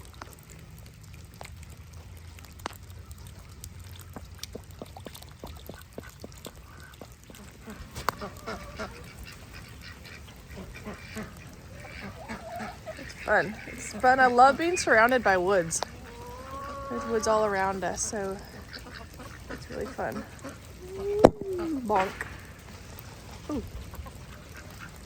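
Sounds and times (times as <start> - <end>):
ducks quacking: 5.6 - 25.0.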